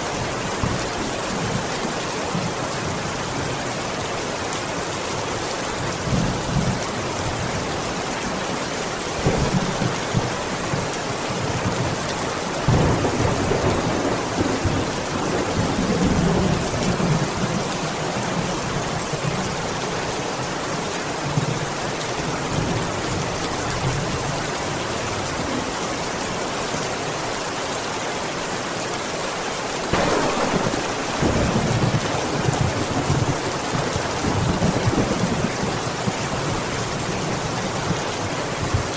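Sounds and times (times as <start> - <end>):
heavy rain: 0.0 - 38.9
thunder rumbling: 12.6 - 17.4, 29.9 - 37.2.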